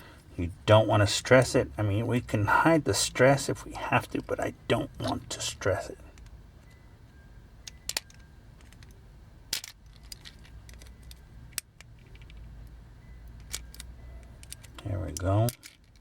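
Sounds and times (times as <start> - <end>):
low steady hum: 0.0 - 16.0
metal tool clicking on toy parts: 7.6 - 12.5, 13.3 - 16.0.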